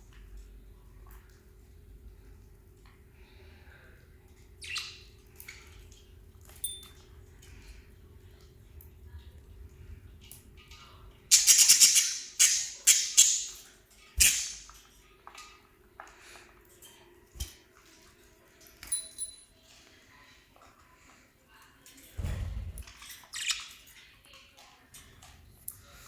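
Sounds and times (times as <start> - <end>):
birds fluttering in a cage: 0.0 - 26.0
bird chirp: 4.6 - 5.2, 11.3 - 13.6, 14.2 - 14.7.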